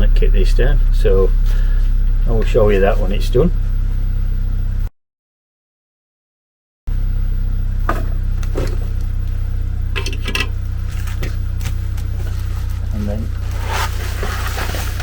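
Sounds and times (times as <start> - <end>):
steady low hum: 0.0 - 4.9, 6.9 - 15.0
packaging rustling and knocking: 11.0 - 15.0.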